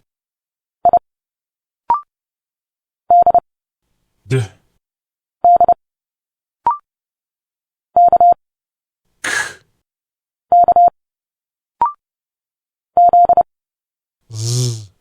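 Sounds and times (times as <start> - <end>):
spoken hissing consonant: 9.2 - 9.6, 14.3 - 14.9.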